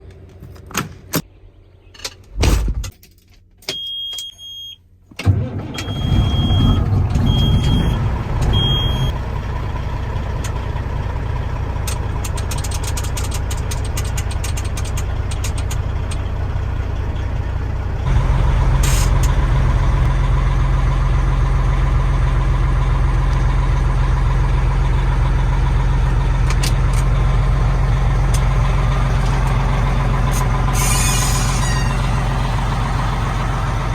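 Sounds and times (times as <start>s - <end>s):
diesel engine starting and idling: 5.1s - 33.9s
warning beeper beeps: 5.8s - 9.1s.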